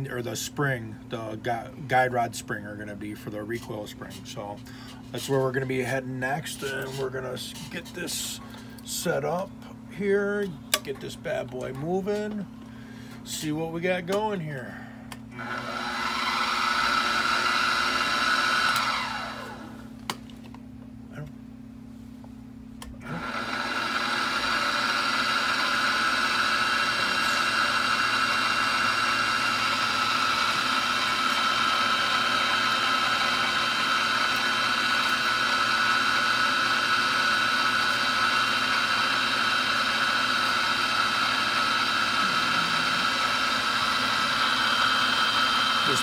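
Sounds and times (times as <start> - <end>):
milling machine spindle whine: 15.4 - 19.8, 23.0 - 46.0.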